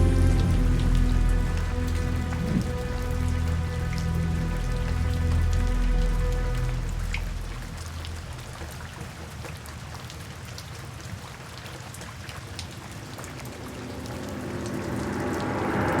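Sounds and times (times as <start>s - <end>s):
soft background music: 0.0s - 8.8s
steady rain: 0.0s - 16.0s.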